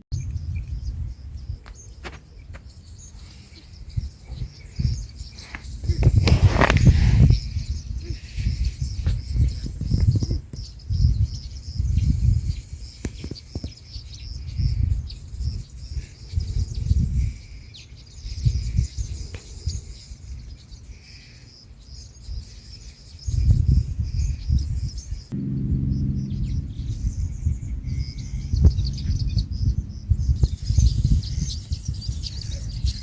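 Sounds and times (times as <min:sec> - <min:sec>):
wind buffeting microphone: 0:23.3 - 0:33.0.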